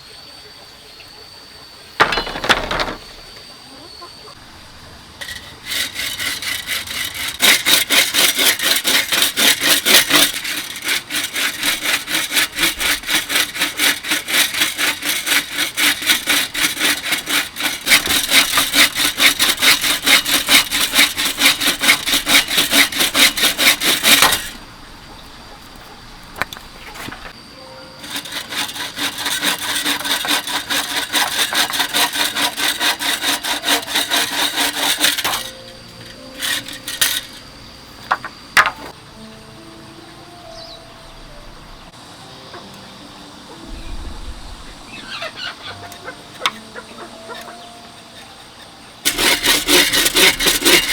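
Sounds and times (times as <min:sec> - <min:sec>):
hand saw cutting bamboo: 0:05.2 - 0:24.6, 0:28.0 - 0:37.5, 0:45.6 - 0:48.4, 0:49.0 - 0:50.9.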